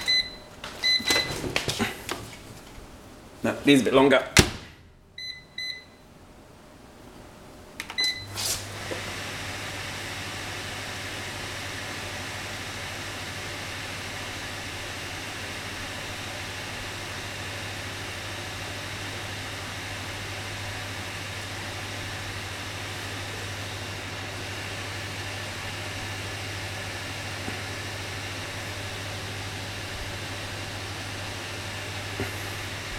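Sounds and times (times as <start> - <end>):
microwave keypad beeping: 0.0 - 1.4, 5.2 - 6.0, 7.9 - 8.4
microwave humming: 0.0 - 32.9.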